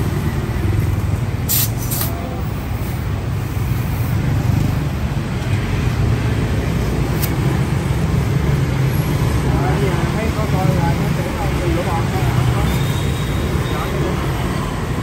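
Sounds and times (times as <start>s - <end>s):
street traffic rumble: 0.0s - 15.0s
short air hisses: 1.5s - 2.2s.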